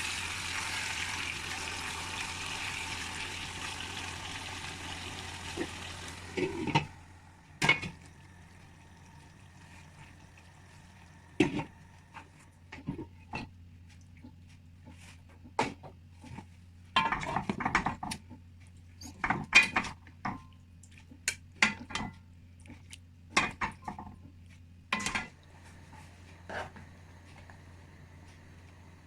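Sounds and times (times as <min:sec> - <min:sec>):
steady low hum: 0:00.0 - 0:15.0
metal utensils clinking on cookware: 0:25.0 - 0:25.4.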